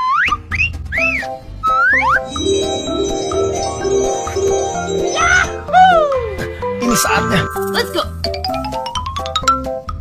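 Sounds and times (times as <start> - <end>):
whistle-like tune swooping in pitch: 0.9 - 6.4.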